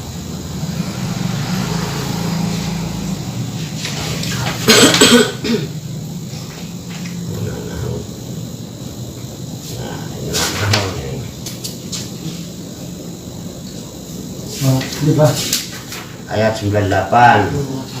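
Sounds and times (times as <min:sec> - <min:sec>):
steady low hum: 0:00.0 - 0:18.0
person coughing: 0:04.6 - 0:05.8.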